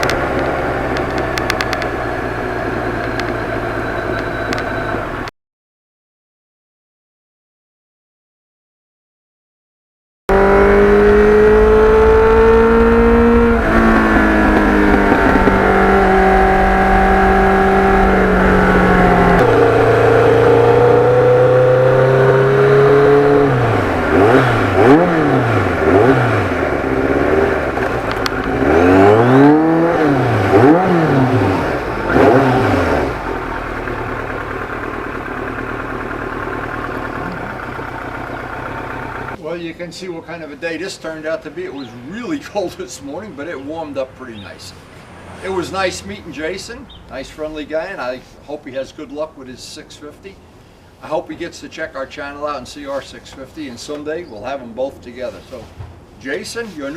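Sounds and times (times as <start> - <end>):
motorcycle engine revving: 0.0 - 5.3, 10.3 - 39.4.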